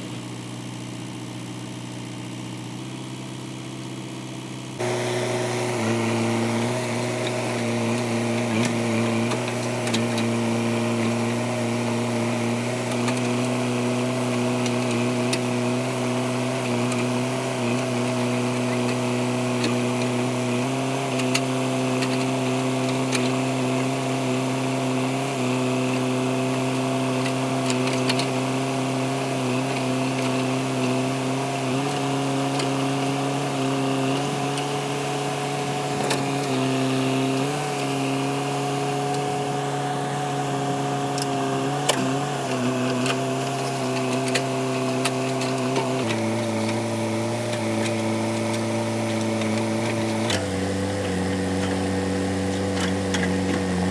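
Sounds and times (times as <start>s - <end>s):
backhoe diesel engine running: 0.0s - 53.9s.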